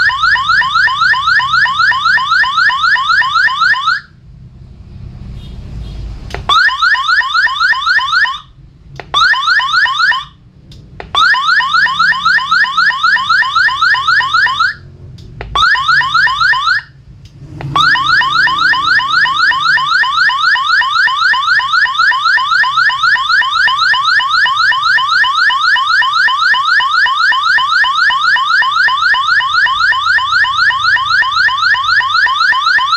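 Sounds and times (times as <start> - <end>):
electronic siren-like chirps: 0.0 - 4.2, 11.1 - 14.9, 15.5 - 17.0, 17.6 - 32.9.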